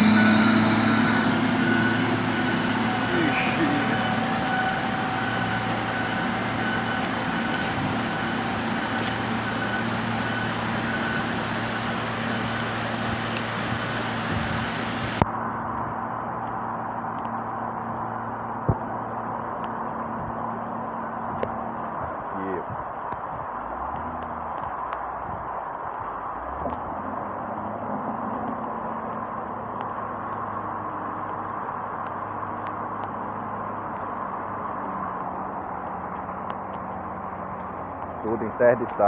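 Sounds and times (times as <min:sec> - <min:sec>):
constant hiss: 0:00.0 - 0:15.2
vehicle engine idling: 0:00.0 - 0:15.2.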